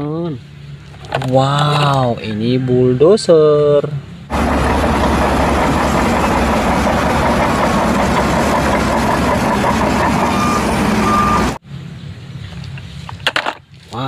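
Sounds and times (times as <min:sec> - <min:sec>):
bulldozer engine running: 0:04.3 - 0:11.6
reversing beeps: 0:09.5 - 0:11.6.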